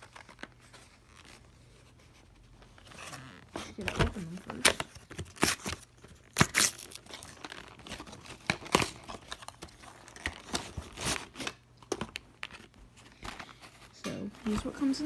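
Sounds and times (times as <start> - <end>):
packaging tearing and crinkling: 2.8 - 12.7.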